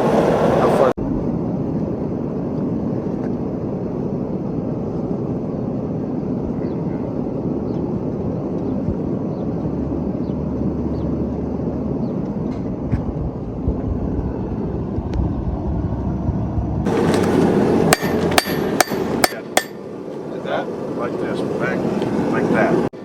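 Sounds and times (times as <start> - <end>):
forge roaring: 9.0 - 22.9
hammer blows on steel ringing: 17.9 - 19.8.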